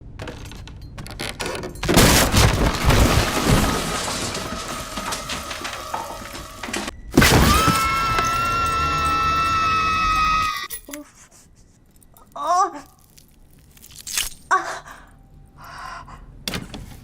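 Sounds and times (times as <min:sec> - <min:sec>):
loud crash of impacts: 0:01.9 - 0:08.1.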